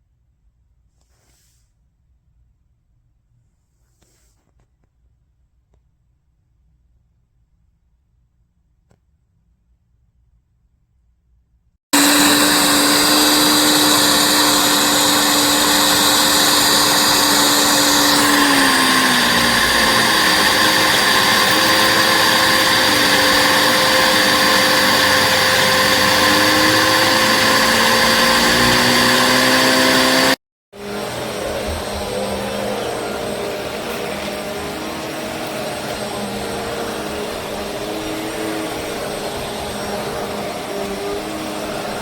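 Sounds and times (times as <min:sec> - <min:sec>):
vacuum cleaner running: 0:12.0 - 0:42.0.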